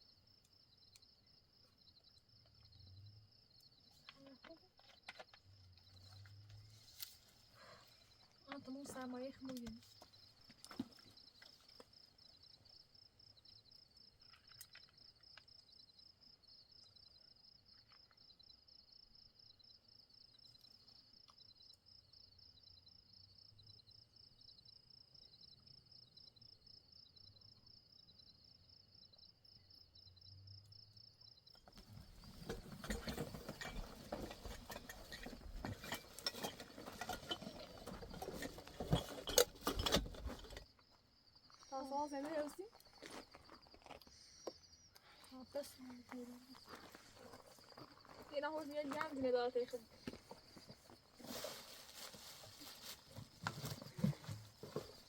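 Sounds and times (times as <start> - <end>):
cricket trilling: 0.0 - 55.0
close rustling and crackling: 49.0 - 55.0.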